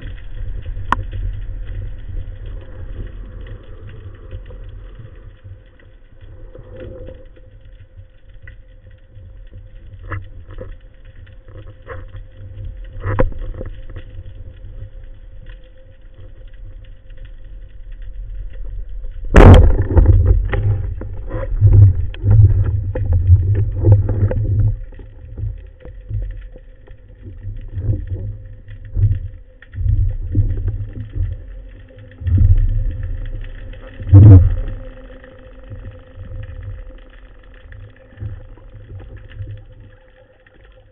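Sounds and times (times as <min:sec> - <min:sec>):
faint steady hum: 0:00.0 - 0:40.9
underwater rumbling: 0:00.0 - 0:40.9
sharp crack: 0:19.3 - 0:22.3.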